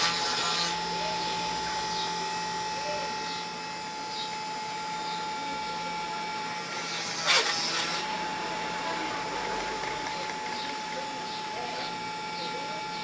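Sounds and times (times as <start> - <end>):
motor pitch sweep: 0.0 - 12.5
stepper motors whining: 0.0 - 13.0.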